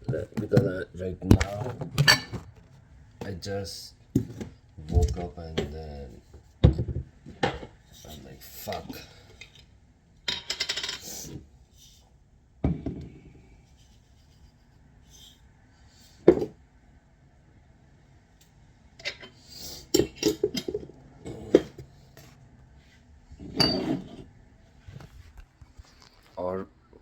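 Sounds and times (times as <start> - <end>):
dishes and utensils clinking: 1.9 - 2.5, 20.0 - 21.8, 23.5 - 24.2.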